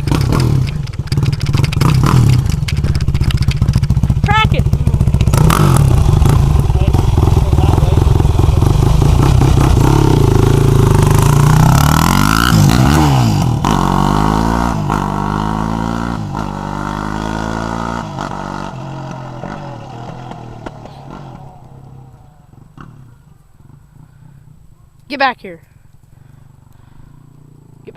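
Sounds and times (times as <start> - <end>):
engine popping: 0.0 - 15.3
quad engine revving: 0.0 - 23.2.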